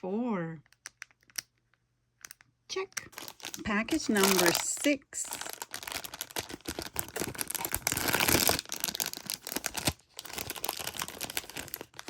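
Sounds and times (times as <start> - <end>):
plastic bag crinkling and tearing: 3.1 - 12.0.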